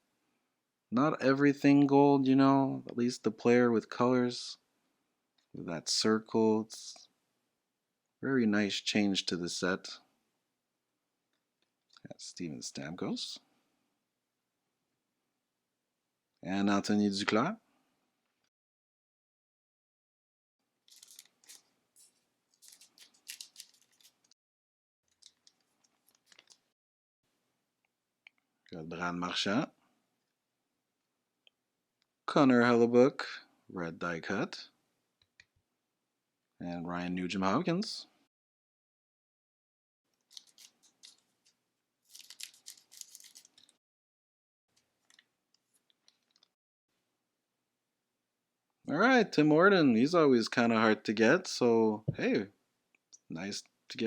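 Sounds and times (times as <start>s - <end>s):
card pack wrapper crackling: 20.8s - 24.4s, 25.1s - 26.7s, 40.2s - 43.8s.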